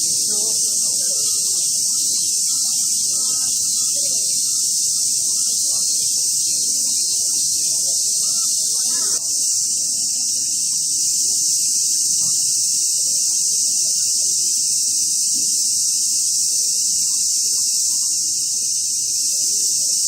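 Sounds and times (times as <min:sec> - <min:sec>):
distant voices murmuring: 0:00.0 - 0:16.0
cicadas buzzing: 0:00.0 - 0:20.0.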